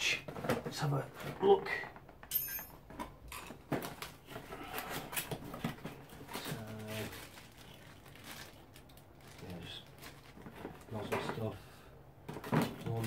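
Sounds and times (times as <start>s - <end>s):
packaging rustling: 3.5s - 11.6s.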